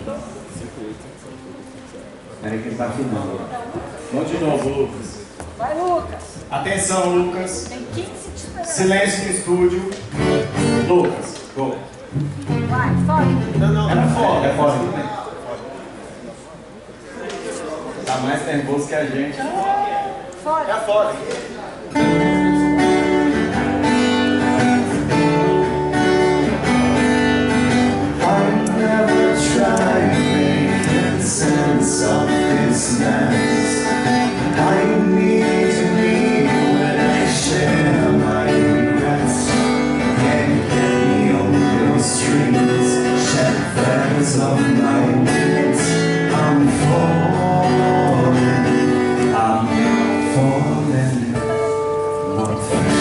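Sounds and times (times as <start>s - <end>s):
strummed acoustic guitar chords: 9.4s - 11.3s, 12.1s - 15.0s, 21.9s - 53.0s
live band playing: 10.0s - 11.3s, 12.2s - 15.0s, 21.9s - 53.0s.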